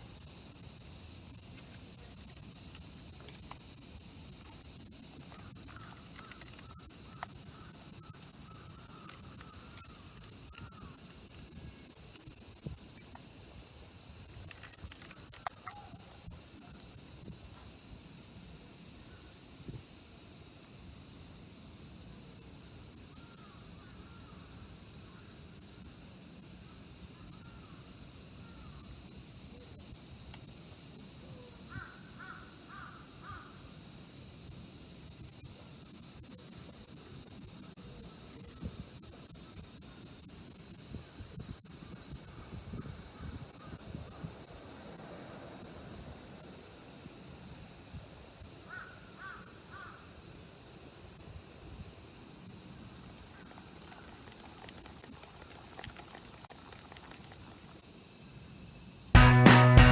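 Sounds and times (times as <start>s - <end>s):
high-pitched insect chorus: 0.0s - 59.9s
crow cawing: 5.3s - 11.0s.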